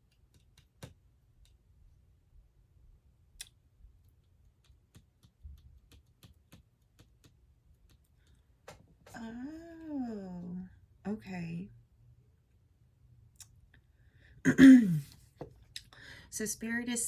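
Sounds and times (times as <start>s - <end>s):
faint clicks and taps: 0.0s - 2.0s, 3.4s - 9.2s.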